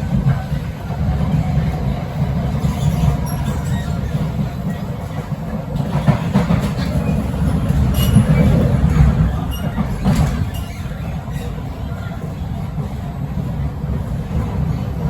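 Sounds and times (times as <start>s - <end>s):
train wheels rumbling on rail: 0.0s - 15.0s
faint high squeals: 7.9s - 12.2s.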